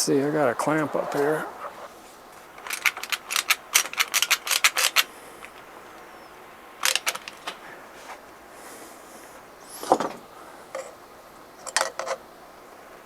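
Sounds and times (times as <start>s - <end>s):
hand clamp ratchet clicks: 2.6s - 5.6s, 6.8s - 7.5s.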